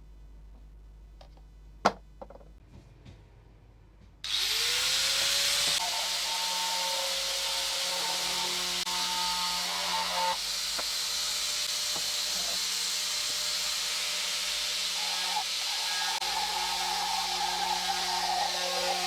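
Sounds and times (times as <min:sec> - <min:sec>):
electric power tool hissing: 0:04.3 - 0:19.0.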